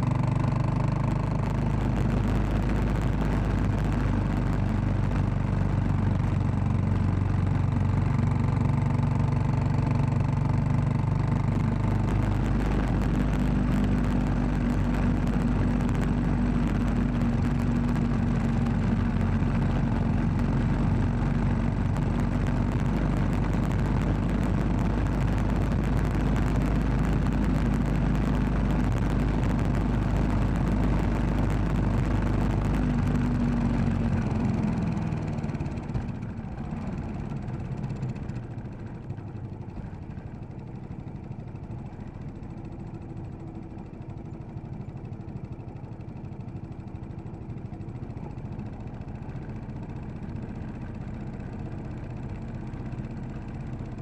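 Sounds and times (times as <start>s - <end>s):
motorcycle engine running: 0.0s - 54.0s
wind rush on microphone: 1.1s - 7.7s, 11.2s - 36.6s.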